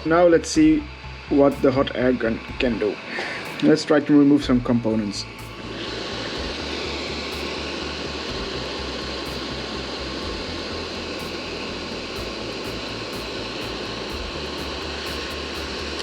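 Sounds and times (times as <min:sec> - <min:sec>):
hot air gun blowing: 0:05.4 - 0:16.0.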